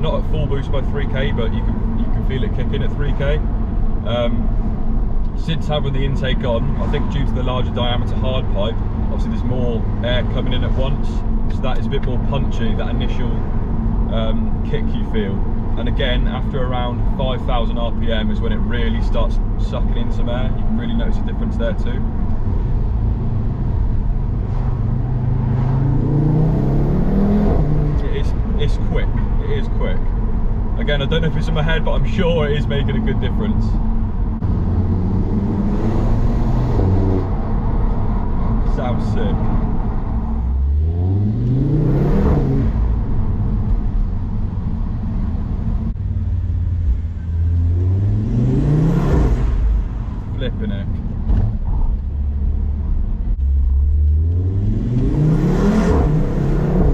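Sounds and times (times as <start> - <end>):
car engine accelerating hard: 20.3 - 29.9, 34.2 - 56.9.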